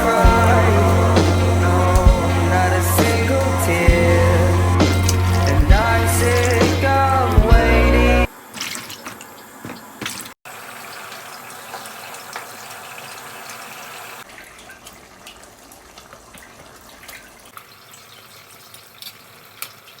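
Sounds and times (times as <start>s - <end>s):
water running and splashing: 0.0s - 6.9s, 8.4s - 20.0s
water drips and pops: 14.2s - 20.0s.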